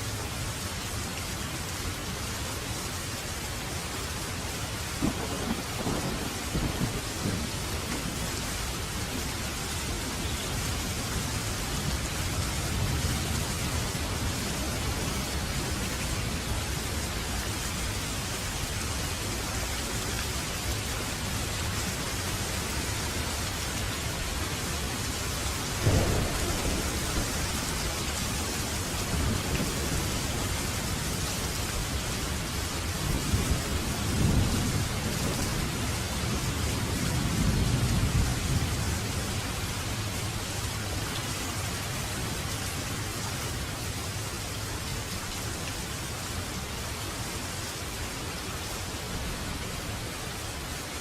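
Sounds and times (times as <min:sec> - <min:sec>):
steady rain: 0:00.0 - 0:51.0
thunder clap: 0:05.0 - 0:08.2, 0:25.8 - 0:28.0
low rolling thunder rumbles: 0:05.0 - 0:17.0, 0:25.6 - 0:40.2.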